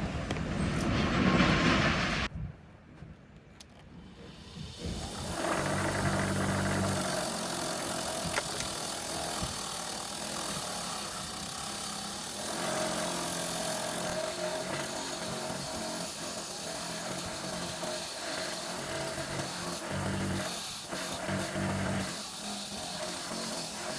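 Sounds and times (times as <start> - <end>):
electric power tool running: 4.3 - 23.9.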